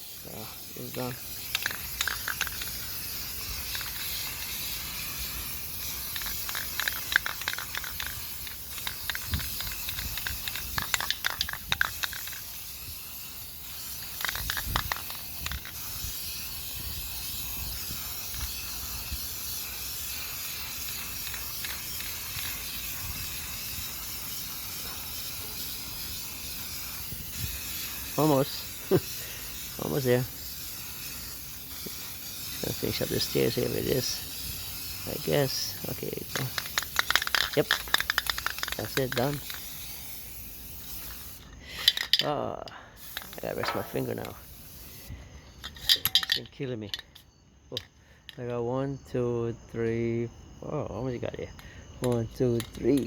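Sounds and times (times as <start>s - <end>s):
spray can hissing: 0.0s - 42.3s, 43.0s - 45.1s
spray can rattling: 0.0s - 47.2s, 52.0s - 53.0s.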